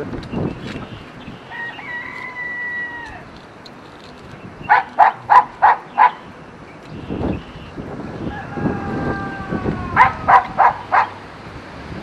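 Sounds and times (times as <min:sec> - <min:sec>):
animal calling: 0:04.6 - 0:06.4, 0:08.2 - 0:11.2.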